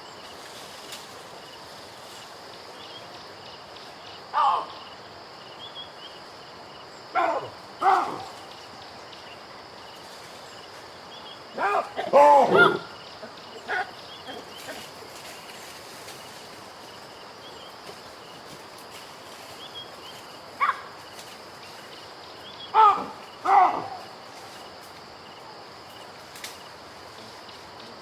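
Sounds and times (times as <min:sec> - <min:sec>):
baboon barks: 0:04.3 - 0:04.8, 0:07.1 - 0:08.5, 0:11.5 - 0:14.9, 0:20.6 - 0:20.9, 0:22.7 - 0:24.1
baboon call: 0:04.3 - 0:04.9, 0:07.1 - 0:08.5, 0:11.5 - 0:15.0, 0:20.6 - 0:20.9, 0:22.7 - 0:24.1.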